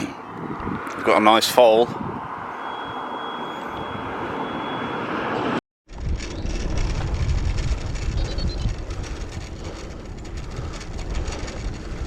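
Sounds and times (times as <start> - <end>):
wind buffeting microphone: 0.0 - 3.0, 5.9 - 12.0.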